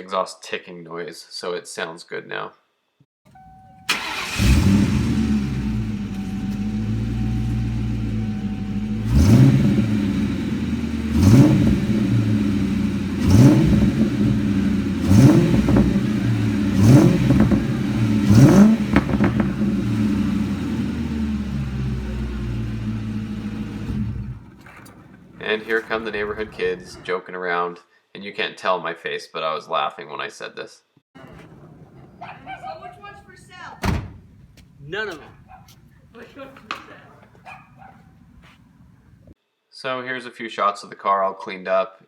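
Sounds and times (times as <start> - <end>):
car engine idling: 3.3 - 27.1, 31.2 - 39.3
engine revving: 3.9 - 27.1.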